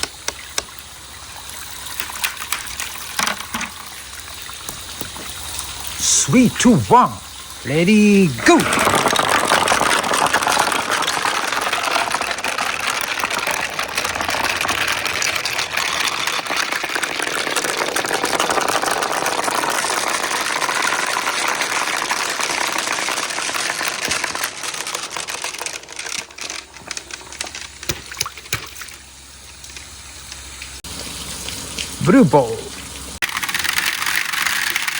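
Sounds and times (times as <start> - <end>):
marbles rattling down a track: 8.5 - 27.9, 33.2 - 34.9.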